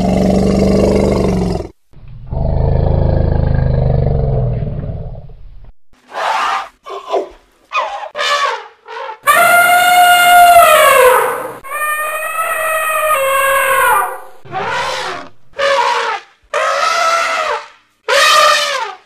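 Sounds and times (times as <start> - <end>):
elephant roars: 0.0 - 5.2, 12.2 - 16.0.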